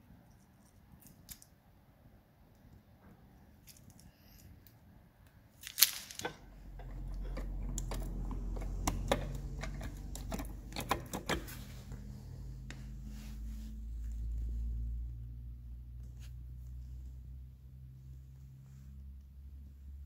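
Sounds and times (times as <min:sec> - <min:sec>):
low steady hum: 0:00.0 - 0:20.0
sharp clicks and knocks: 0:06.1 - 0:12.0.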